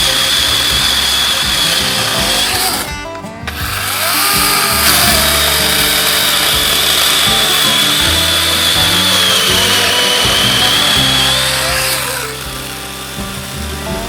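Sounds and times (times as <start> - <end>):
low notes: 0.0 - 14.0.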